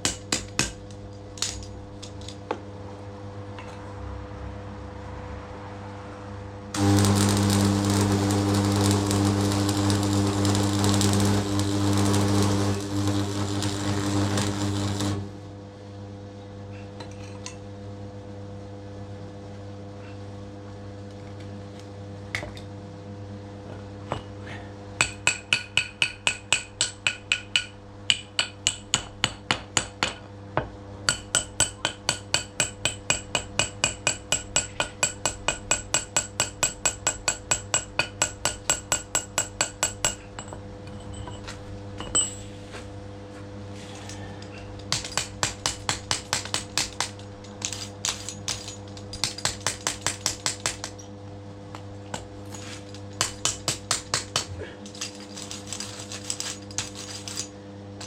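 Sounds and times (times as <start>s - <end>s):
power tool running loudly: 6.8s - 15.5s.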